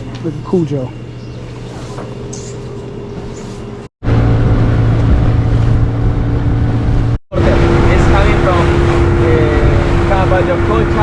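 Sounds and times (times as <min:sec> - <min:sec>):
boat engine droning: 0:00.0 - 0:11.0.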